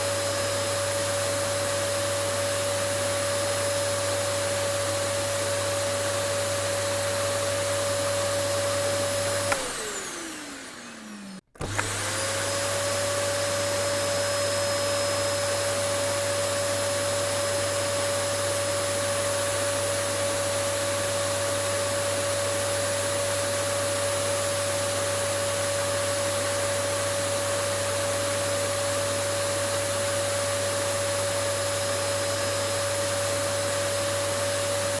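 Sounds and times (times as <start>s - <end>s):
vacuum cleaner motor whining: 0.0s - 35.0s
vacuum switch click: 9.4s - 9.8s, 11.6s - 12.0s.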